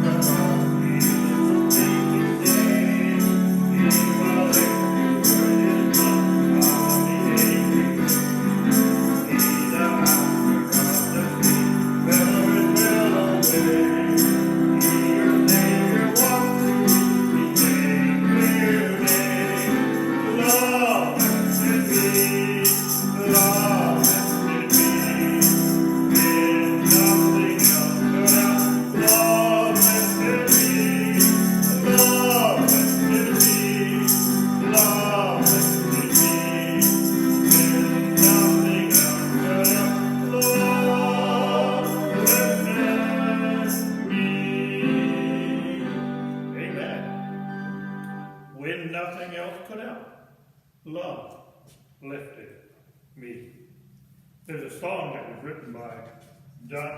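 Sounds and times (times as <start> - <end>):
jingling percussion beat: 0.0 - 44.0
gospel music: 0.0 - 56.9.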